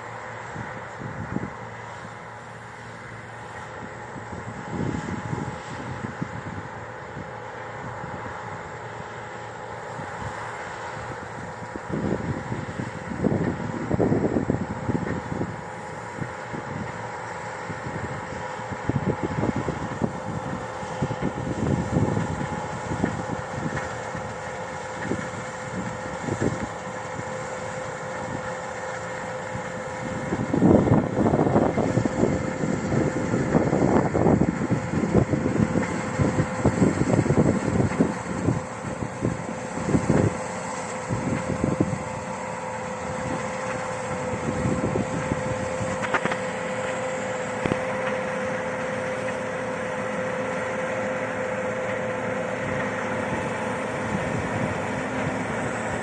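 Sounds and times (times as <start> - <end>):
combine harvester droning: 0.0 - 56.0
gusts of rumbling noise: 29.9 - 48.0.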